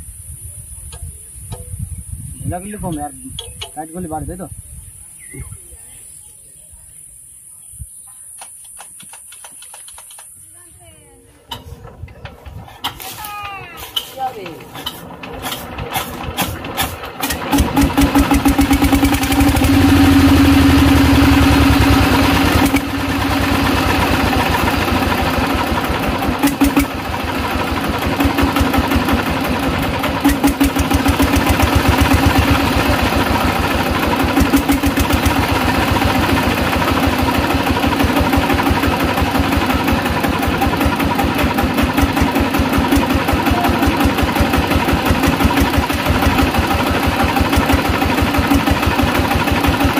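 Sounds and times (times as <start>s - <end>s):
diesel engine running: 13.9s - 49.9s.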